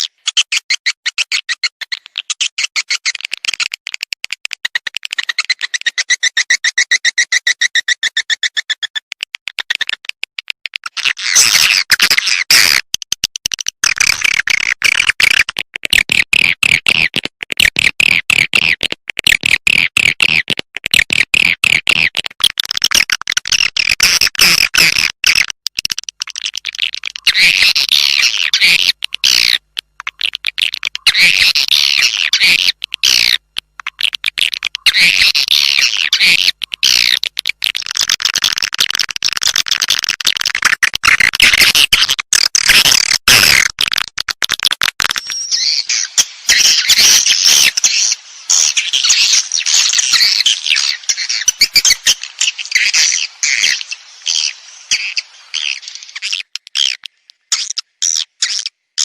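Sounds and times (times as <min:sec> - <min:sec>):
swiftlets twittering chirps: 0:45.0 - 0:58.6.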